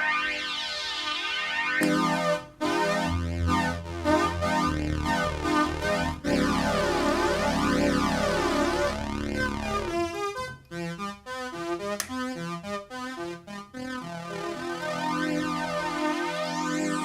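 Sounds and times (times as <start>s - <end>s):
sharp click: 12.0s - 12.2s.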